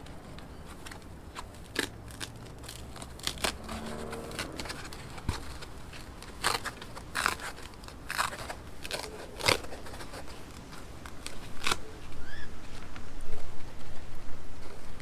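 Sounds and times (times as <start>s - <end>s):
foam rustling and handling: 0.0s - 12.9s
packing foam being cut: 0.6s - 11.8s.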